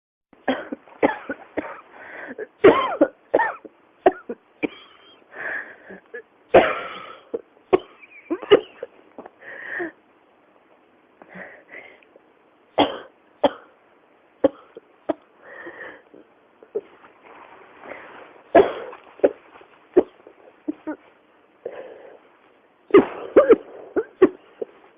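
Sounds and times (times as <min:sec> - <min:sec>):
person coughing: 0:00.5 - 0:05.2, 0:06.6 - 0:08.9, 0:12.8 - 0:13.7, 0:18.5 - 0:19.4, 0:22.9 - 0:24.8.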